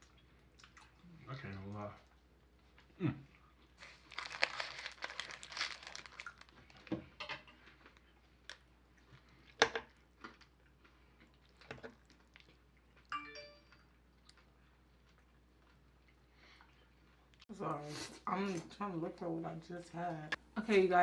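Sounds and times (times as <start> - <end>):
crinkling: 3.8 - 11.0.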